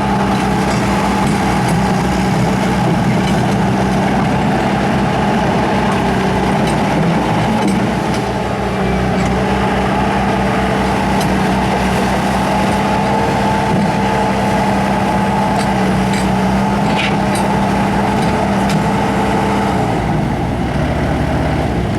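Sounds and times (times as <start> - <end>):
diesel engine running: 0.0 - 21.9.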